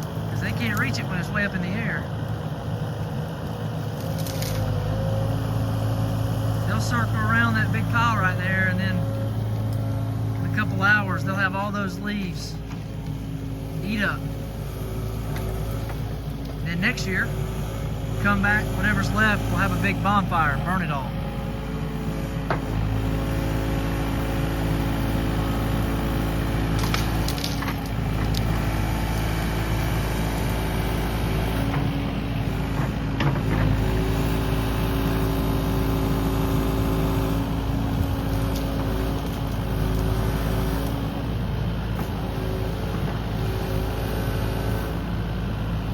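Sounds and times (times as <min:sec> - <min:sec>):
excavator diesel engine running: 0:00.0 - 0:45.9
wood snapping: 0:03.4 - 0:04.7, 0:26.7 - 0:28.7, 0:38.1 - 0:40.2.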